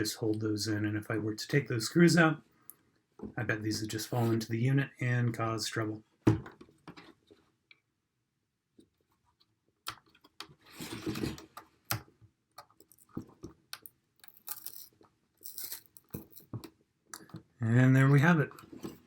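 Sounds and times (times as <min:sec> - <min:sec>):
rubber pad scraping: 0:10.6 - 0:11.5.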